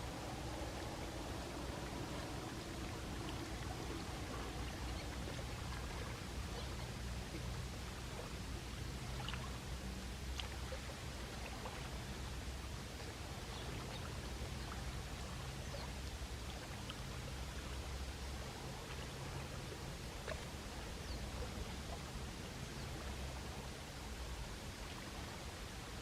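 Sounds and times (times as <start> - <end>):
small waves washing on shore: 0.0 - 26.0.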